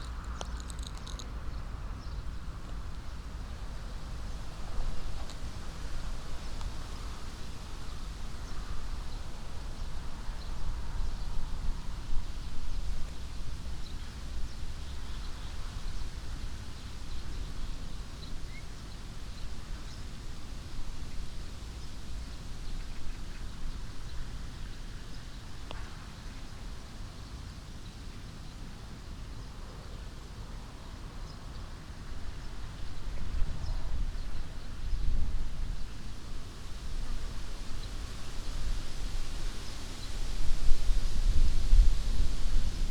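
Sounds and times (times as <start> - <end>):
wind rumble on microphone: 32.0 - 42.9.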